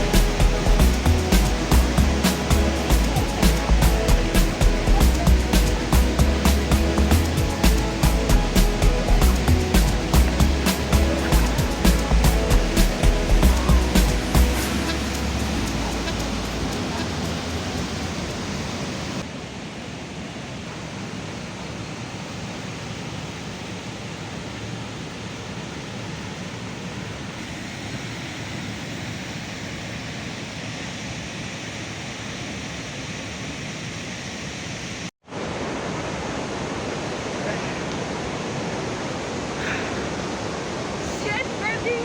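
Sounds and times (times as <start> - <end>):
waterfall rushing: 0.0 - 30.4, 34.9 - 42.0.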